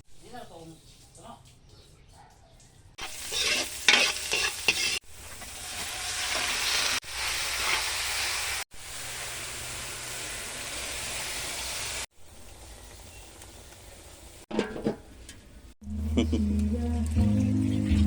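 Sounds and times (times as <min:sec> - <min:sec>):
utensil scraping pan: 0:03.0 - 0:06.8
food sizzling in frying pan: 0:03.0 - 0:14.5.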